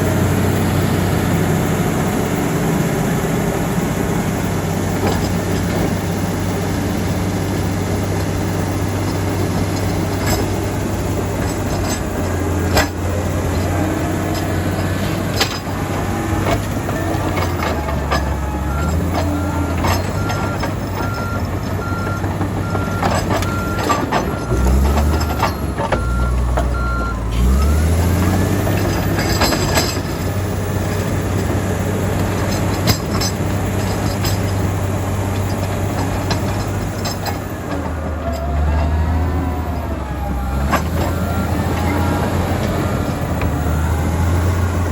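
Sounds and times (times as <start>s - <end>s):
bulldozer engine under load: 0.0s - 44.9s
clanks from tracks and rock: 4.4s - 39.0s
reversing alarm beeping: 8.0s - 30.6s, 38.3s - 44.9s.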